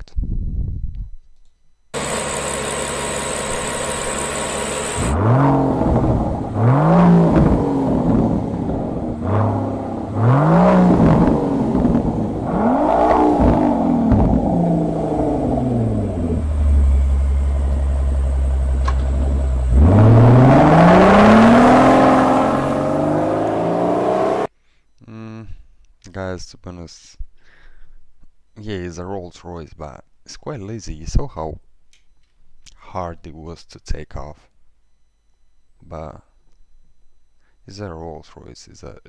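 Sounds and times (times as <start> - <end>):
car engine revving: 2.0 - 24.5.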